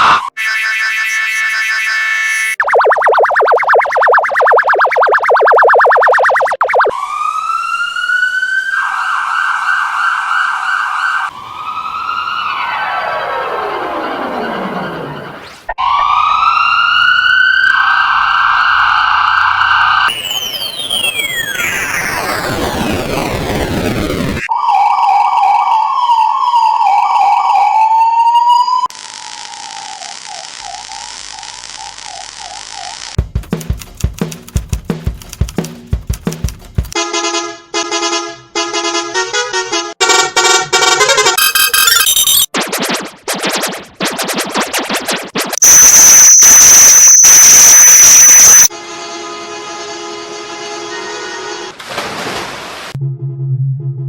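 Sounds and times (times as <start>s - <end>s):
ambulance siren: 0.0s - 28.9s, 45.6s - 48.8s
sharp rhythmic hits: 33.2s - 37.0s, 41.4s - 46.0s.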